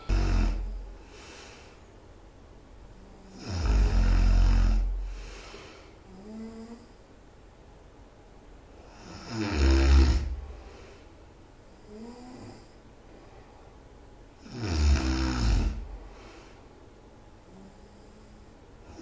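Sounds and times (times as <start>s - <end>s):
person snoring loudly: 0.0s - 0.9s, 3.3s - 5.2s, 8.9s - 10.6s, 14.4s - 16.0s.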